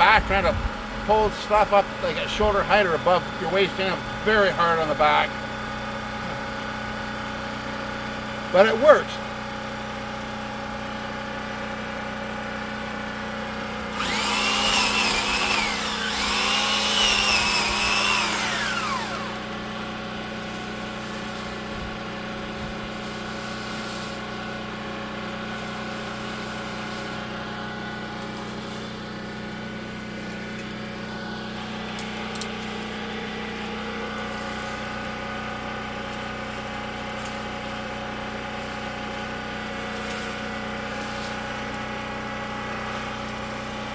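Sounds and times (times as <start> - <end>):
steady engine hum: 0.0 - 43.9
pole saw cutting branches: 13.8 - 43.9.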